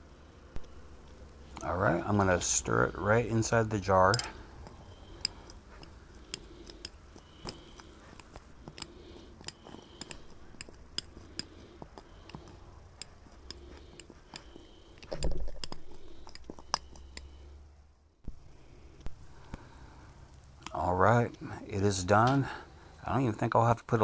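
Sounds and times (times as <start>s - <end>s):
utensil scraping inside a jar: 0.7s - 17.5s.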